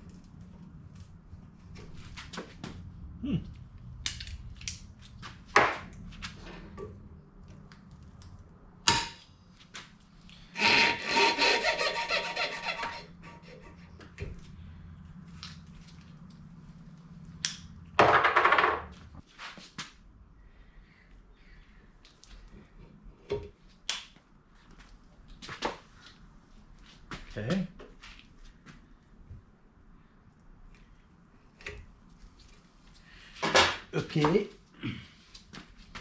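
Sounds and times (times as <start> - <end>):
rasping tool noise: 10.5 - 14.0.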